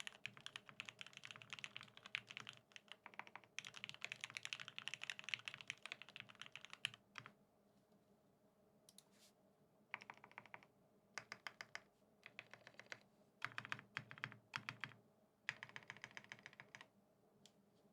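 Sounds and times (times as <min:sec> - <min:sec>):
mechanical keyboard typing: 0:00.0 - 0:07.3, 0:10.0 - 0:16.9.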